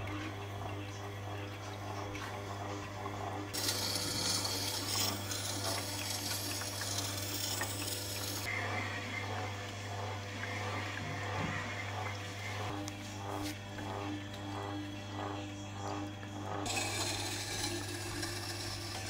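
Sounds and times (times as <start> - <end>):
tool cutting wood shaving hiss: 3.5 - 8.5, 16.7 - 19.0
wood lathe humming: 3.5 - 19.0.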